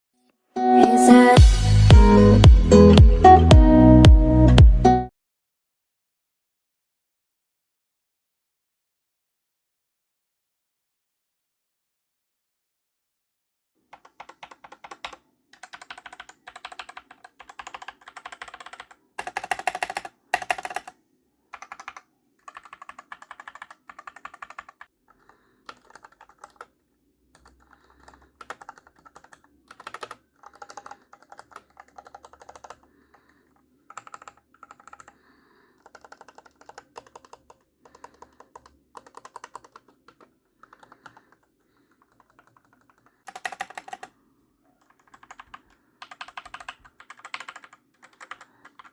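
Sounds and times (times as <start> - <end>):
mechanical keyboard typing: 13.9 - 21.0, 21.6 - 26.7, 27.3 - 33.3, 33.9 - 35.2, 35.8 - 44.1, 44.8 - 48.9.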